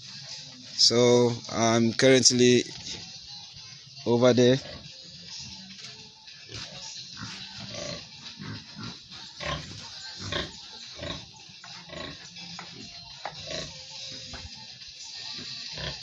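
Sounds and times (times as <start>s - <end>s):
pigs grunting: 4.5s - 16.0s.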